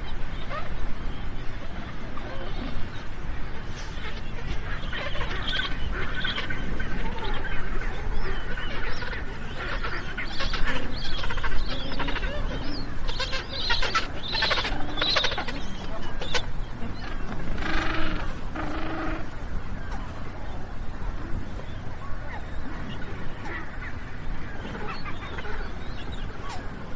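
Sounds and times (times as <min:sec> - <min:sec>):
penguins calling: 0:00.0 - 0:16.0
steady low rumble: 0:00.0 - 0:16.0.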